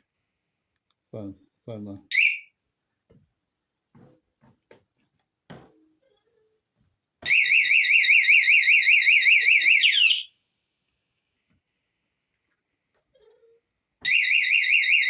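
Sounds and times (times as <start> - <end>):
motorcycle alarm siren warbling: 2.1 - 2.5, 7.3 - 10.3, 14.1 - 15.0
faint taps: 3.9 - 5.8.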